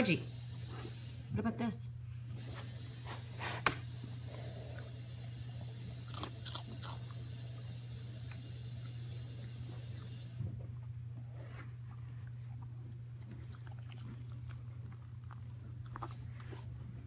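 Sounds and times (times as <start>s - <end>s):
steady low hum: 0.0s - 17.0s
puppy crunching food: 3.7s - 17.0s.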